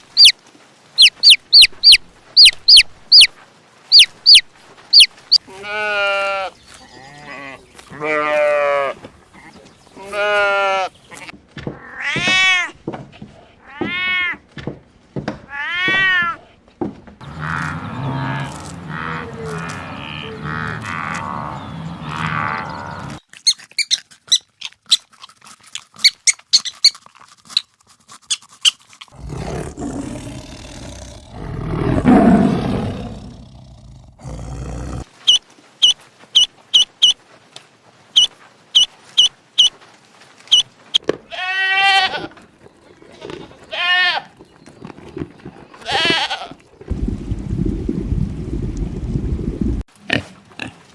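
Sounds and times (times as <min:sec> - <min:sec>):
quick sharp chirps: 0:01.0 - 0:03.3
bleat-like animal calls: 0:05.4 - 0:09.0, 0:41.3 - 0:42.3, 0:43.2 - 0:44.3.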